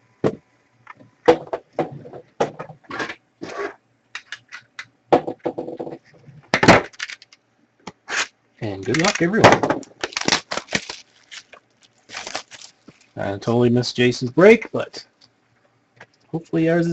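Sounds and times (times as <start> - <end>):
packaging crinkling and ripping: 6.8 - 7.4, 8.1 - 13.2.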